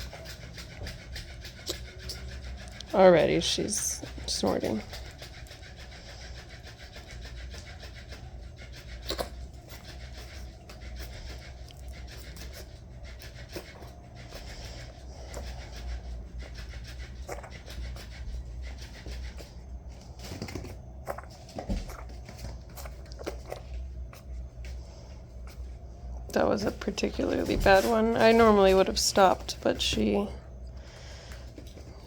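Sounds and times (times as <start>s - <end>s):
kitten snorting while eating: 0.0s - 24.5s.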